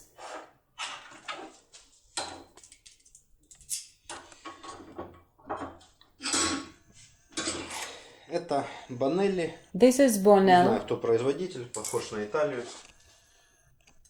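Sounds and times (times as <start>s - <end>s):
small metal tools clattering: 2.2s - 7.9s, 11.7s - 12.2s.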